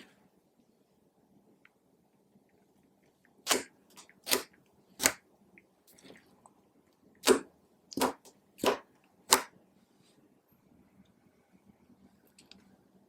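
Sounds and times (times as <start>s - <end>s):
slime popping: 3.4s - 5.2s.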